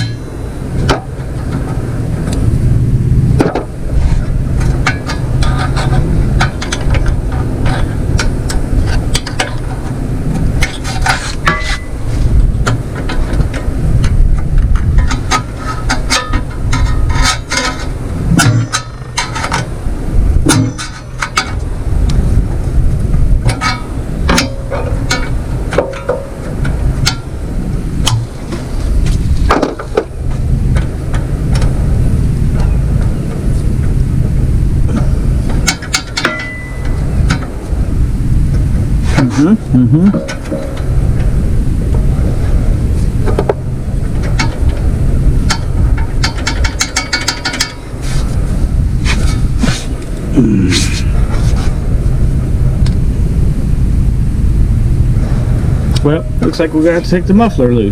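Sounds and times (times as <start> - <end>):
hand tools clanking on metal: 0.0 - 1.7, 10.6 - 12.0, 15.0 - 19.7, 20.5 - 21.6, 23.5 - 27.3, 34.9 - 37.5, 45.5 - 48.0
steady low rumble: 0.0 - 57.9.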